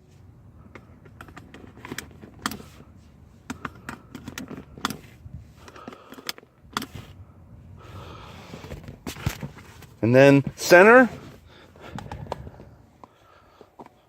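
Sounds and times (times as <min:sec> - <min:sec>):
seat belt latch clicking: 0:00.7 - 0:02.7, 0:03.4 - 0:07.2.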